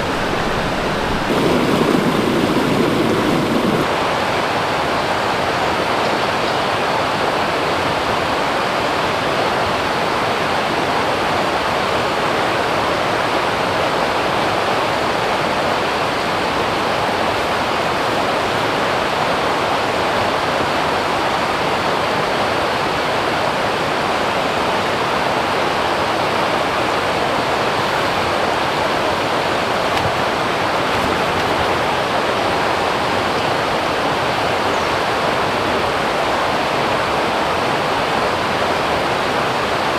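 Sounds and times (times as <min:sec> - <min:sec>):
stream water rushing over rocks: 0:00.0 - 0:04.3, 0:13.3 - 0:39.9.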